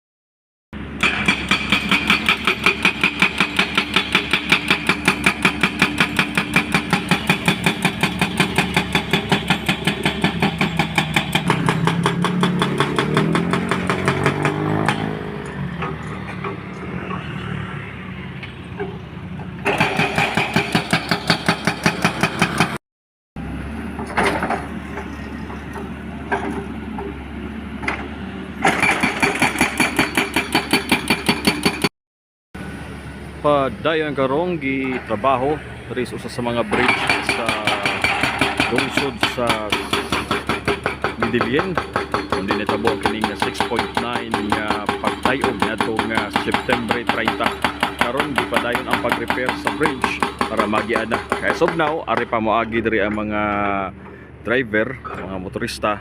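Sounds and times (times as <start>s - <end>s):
vehicle passing: 11.5s - 19.7s.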